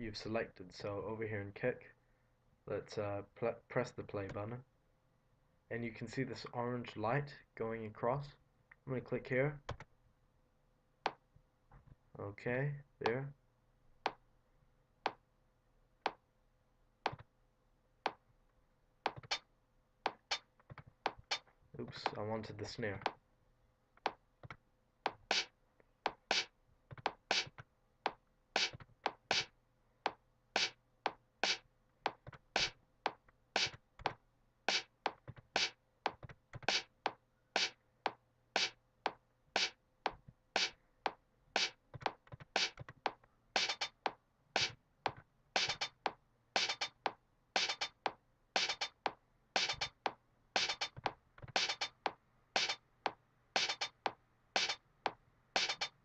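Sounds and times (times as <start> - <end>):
drum machine beat: 19.1 - 19.4, 25.1 - 25.5, 26.1 - 27.6, 28.6 - 29.5, 30.6 - 33.8, 34.7 - 37.0, 37.6 - 37.8, 38.6 - 52.8, 53.6 - 54.8, 55.6 - 56.0.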